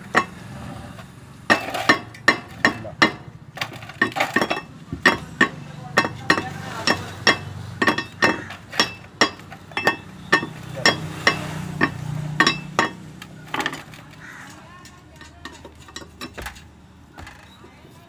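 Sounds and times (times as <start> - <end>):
hammer striking metal: 1.5 - 3.4, 4.0 - 13.9.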